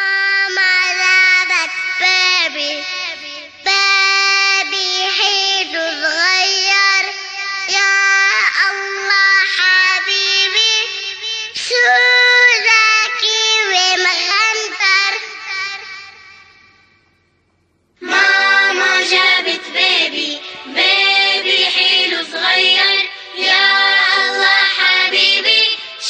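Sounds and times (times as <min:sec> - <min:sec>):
child singing in a high voice: 0:00.0 - 0:16.2
music: 0:18.0 - 0:26.0.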